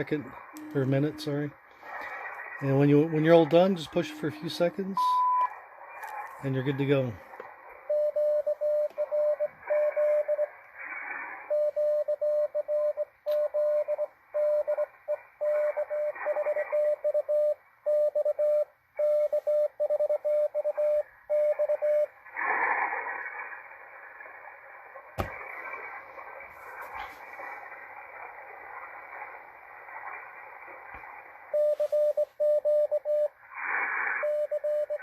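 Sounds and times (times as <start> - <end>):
morse code beeps: 0.0 - 1.6, 2.6 - 5.5, 7.9 - 10.5, 11.5 - 22.1, 31.5 - 33.4, 34.2 - 35.0
static burst: 0.0 - 17.2, 21.6 - 35.0.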